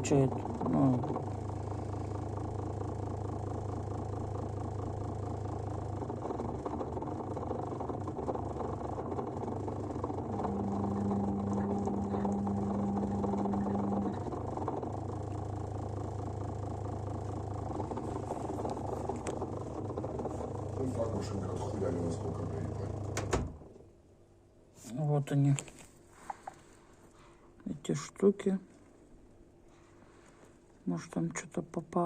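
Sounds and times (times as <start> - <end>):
washing machine drain pump humming: 0.0 - 24.0.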